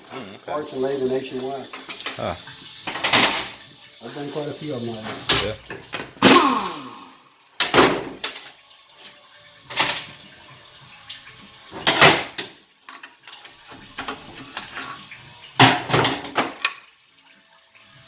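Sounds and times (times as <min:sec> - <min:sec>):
metal parts clattering: 0:08.0 - 0:08.6.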